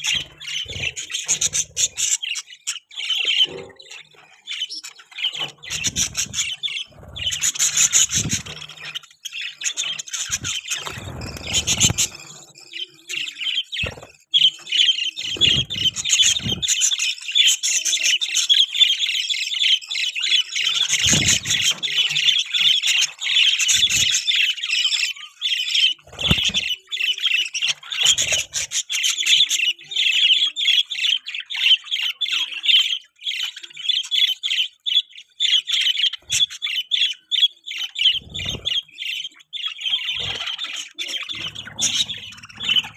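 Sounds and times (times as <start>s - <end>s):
budgerigars chirping and warbling: 0.0s - 42.9s
birds flapping in cage: 5.4s - 9.0s, 9.8s - 12.4s, 20.8s - 22.2s, 26.0s - 26.8s, 38.1s - 38.8s.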